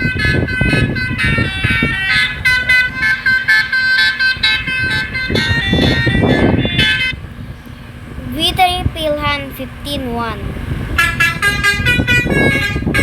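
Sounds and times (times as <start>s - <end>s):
ringtone melody: 1.0s - 7.1s.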